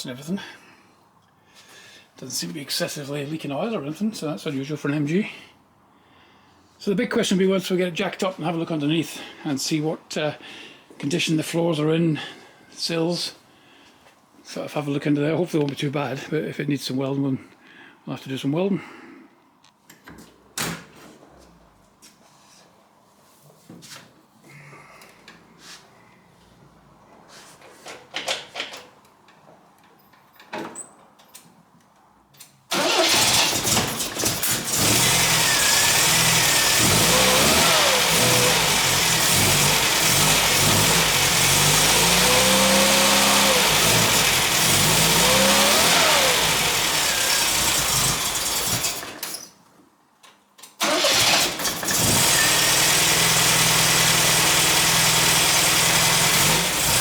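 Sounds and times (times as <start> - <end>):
car engine starting and revving: 32.7 - 49.2, 50.8 - 57.0.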